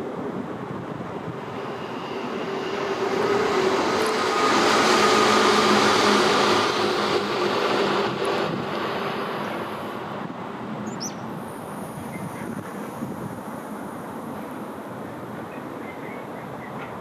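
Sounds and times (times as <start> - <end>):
passing vehicle engine hum: 1.3 - 10.1.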